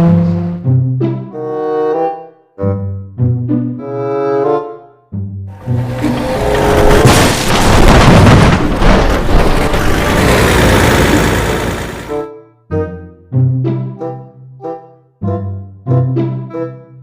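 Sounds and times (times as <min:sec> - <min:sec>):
background music: 0:00.0 - 0:07.2, 0:11.1 - 0:17.0
loud rumbling boom: 0:06.2 - 0:11.1.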